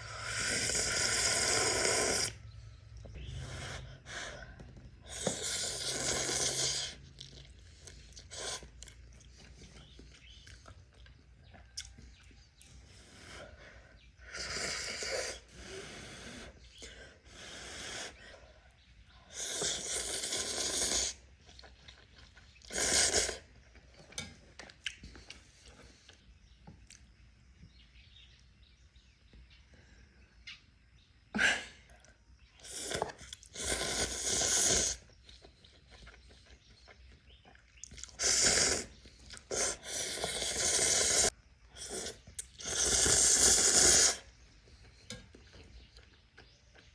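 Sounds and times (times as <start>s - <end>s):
person slurping noodles: 0.0s - 2.4s, 5.0s - 8.9s, 19.3s - 21.2s, 22.6s - 23.5s, 32.6s - 35.1s, 38.0s - 44.3s
person eating: 4.4s - 12.7s, 19.4s - 27.0s, 32.6s - 46.9s.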